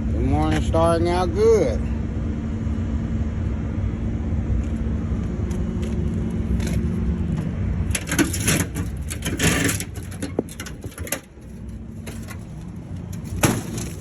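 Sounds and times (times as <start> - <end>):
vehicle engine rumbling: 0.0 - 14.0
crunching and clattering: 5.8 - 14.0.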